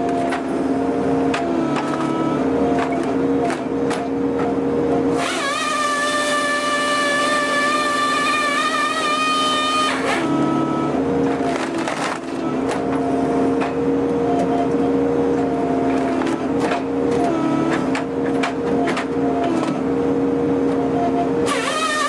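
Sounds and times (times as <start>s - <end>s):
excavator engine hum: 0.0s - 22.0s
high-pitched hydraulic whine: 5.1s - 11.0s, 20.8s - 22.0s.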